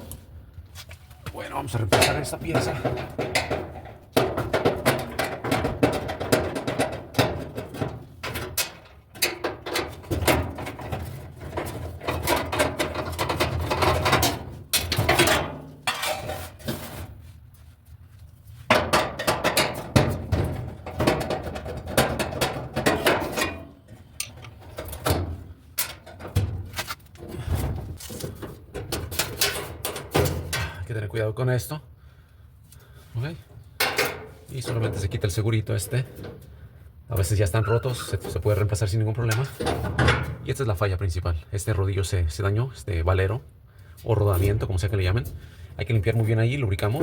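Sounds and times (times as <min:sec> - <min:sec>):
metallic clanks and rattles: 0:01.7 - 0:17.2, 0:18.6 - 0:30.8, 0:33.6 - 0:36.6, 0:37.6 - 0:40.6.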